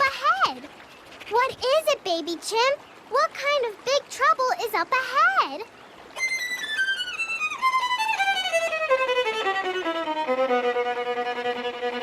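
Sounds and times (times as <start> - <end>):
solo violin descending notes: 6.2 - 12.0.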